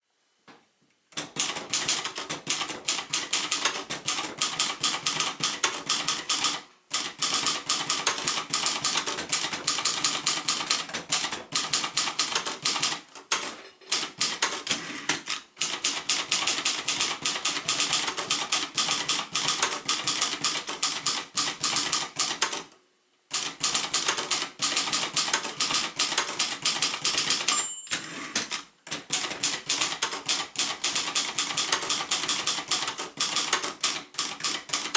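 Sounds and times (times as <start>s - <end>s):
typewriter keystrokes: 1.1s - 34.9s
typewriter bell: 23.7s - 28.2s.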